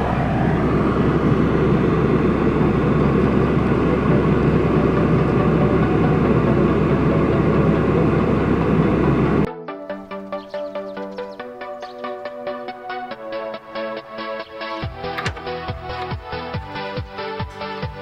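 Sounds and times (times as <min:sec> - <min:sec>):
car engine running: 0:00.0 - 0:09.5, 0:14.8 - 0:18.0.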